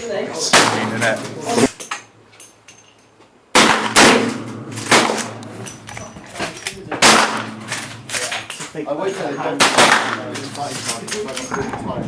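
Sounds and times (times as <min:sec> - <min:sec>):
reverberant gunshots: 0:00.5 - 0:01.1, 0:03.5 - 0:05.6, 0:07.0 - 0:08.1, 0:09.6 - 0:10.3.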